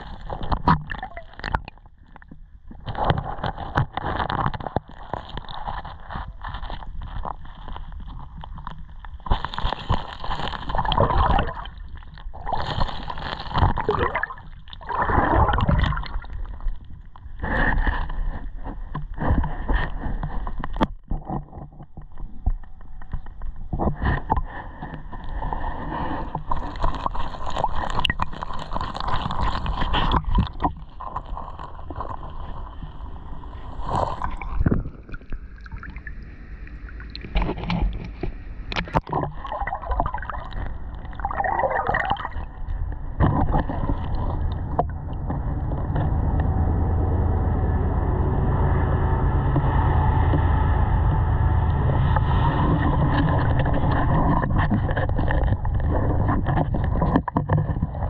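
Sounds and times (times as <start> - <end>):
creek water sloshing and gurgling: 0.0 - 21.7, 37.0 - 46.1, 52.1 - 58.0.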